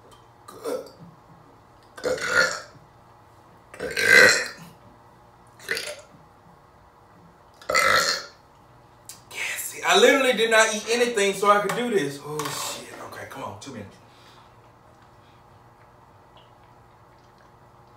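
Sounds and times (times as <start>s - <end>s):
man burping: 0.5s - 1.0s, 2.0s - 2.8s, 3.8s - 4.7s, 5.6s - 6.1s, 7.6s - 8.4s.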